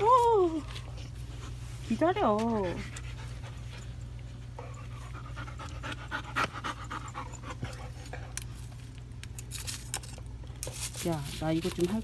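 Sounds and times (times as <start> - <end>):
dog panting: 1.4 - 8.4.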